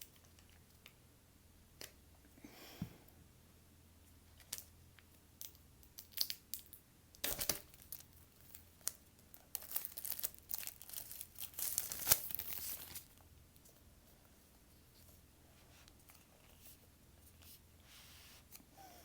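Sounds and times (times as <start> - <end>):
packaging tearing and rustling: 8.8 - 13.1.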